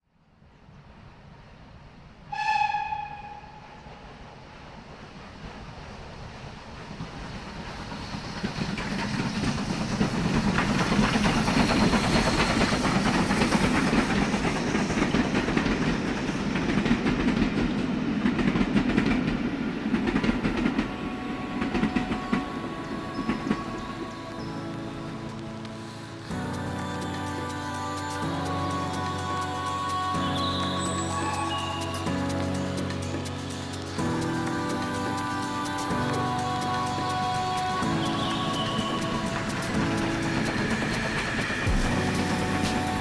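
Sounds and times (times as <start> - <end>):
train rumbling and wheels clattering: 0.4 - 43.0
background music: 19.7 - 43.0.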